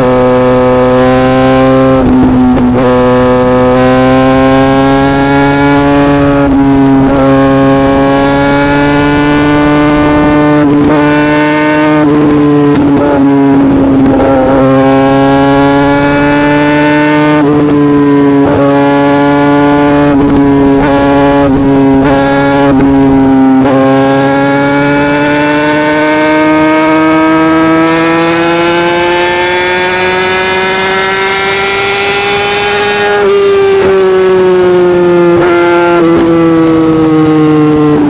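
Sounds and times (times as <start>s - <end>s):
motorcycle engine revving high: 0.0s - 38.0s.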